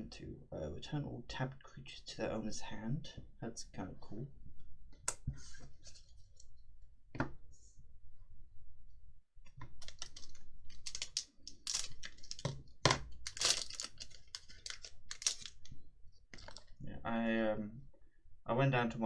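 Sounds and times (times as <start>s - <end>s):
cards being flicked through: 9.8s - 12.5s, 13.3s - 15.6s.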